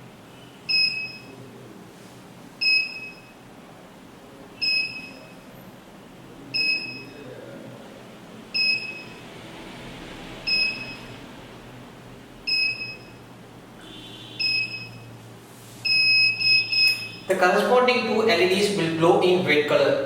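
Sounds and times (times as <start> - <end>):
alarm keypad beeping: 0.7 - 1.3, 2.6 - 3.4, 4.6 - 5.4, 6.5 - 7.1, 8.5 - 9.2, 10.5 - 11.1, 12.4 - 13.2, 14.3 - 15.1, 15.8 - 17.3.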